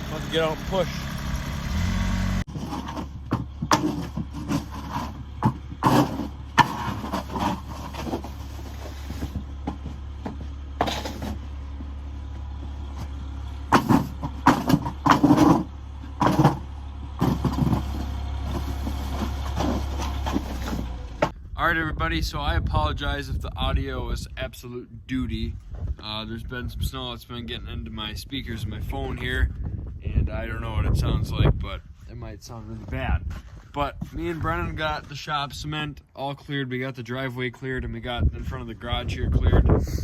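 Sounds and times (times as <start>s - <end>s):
lawn tractor engine running: 0.0s - 21.3s.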